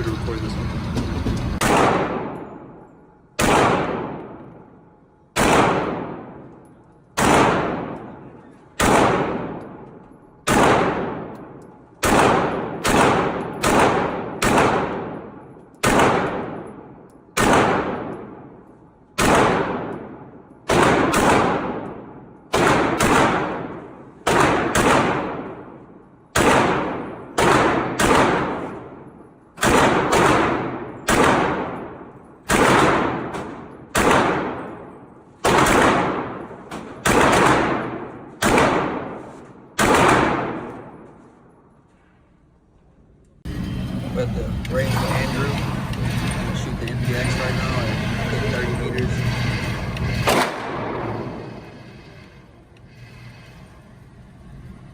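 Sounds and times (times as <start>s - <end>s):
gunshots with echoing tail: 1.5s - 41.2s, 47.3s - 51.6s.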